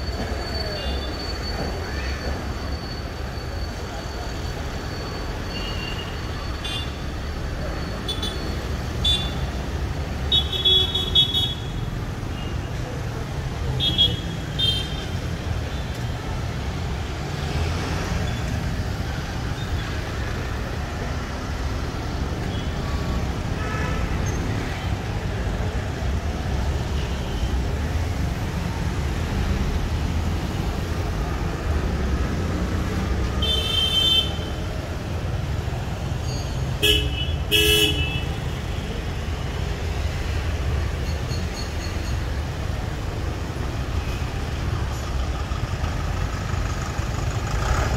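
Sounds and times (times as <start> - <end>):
road traffic rumble: 0.0 - 47.9
car horns honking: 36.8 - 38.4.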